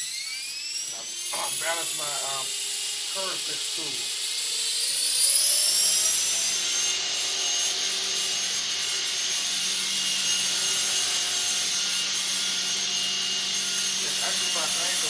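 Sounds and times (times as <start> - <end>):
helicopter motor whine: 0.0 - 15.0.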